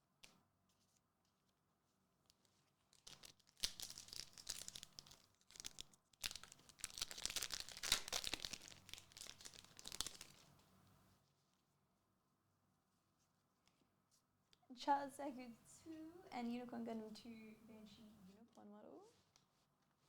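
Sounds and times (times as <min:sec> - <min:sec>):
foil pack tearing and crinkling: 0:03.0 - 0:10.5.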